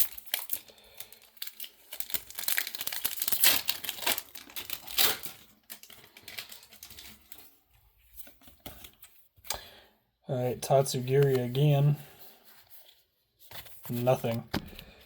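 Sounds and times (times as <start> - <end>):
foil wrapper crinkling and tearing: 0.0 - 7.6.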